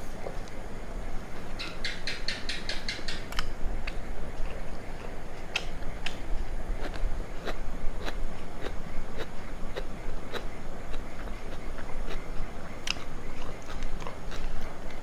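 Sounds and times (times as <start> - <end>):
wet chewing mouth clicks: 3.8 - 15.0.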